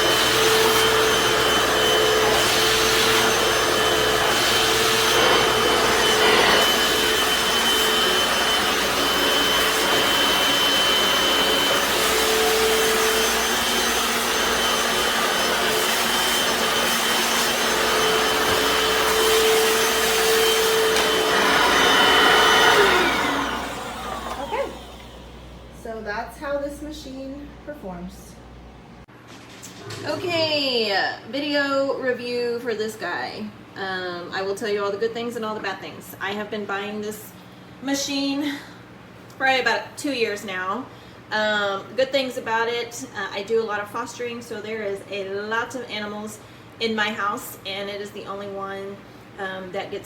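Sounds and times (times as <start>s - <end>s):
brushes scrubbing tile floor: 0.0s - 24.5s
floor cleaner motor whining: 0.0s - 27.1s.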